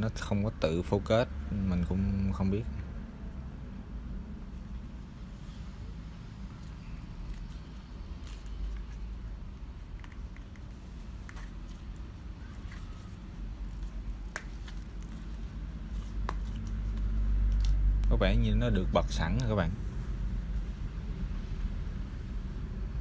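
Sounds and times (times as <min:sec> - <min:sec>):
steady low hum: 0:00.0 - 0:23.0
plastic and cardboard rustling: 0:04.5 - 0:17.8.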